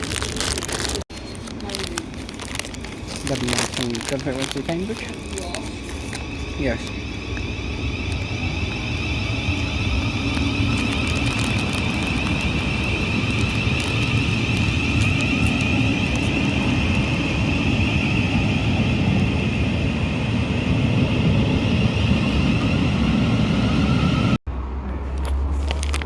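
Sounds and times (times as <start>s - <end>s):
electric train rumbling and whining: 0.0s - 24.8s.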